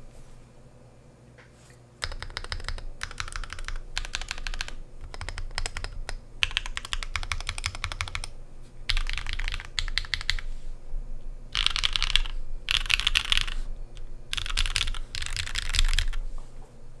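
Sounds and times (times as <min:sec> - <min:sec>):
mechanical keyboard typing: 0:02.0 - 0:10.5, 0:11.6 - 0:16.2.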